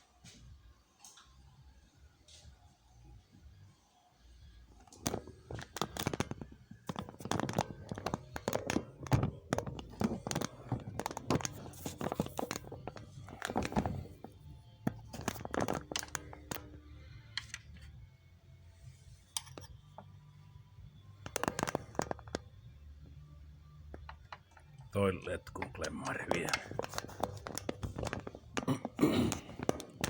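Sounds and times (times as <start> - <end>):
tools clicking and knocking: 23.9 - 24.8.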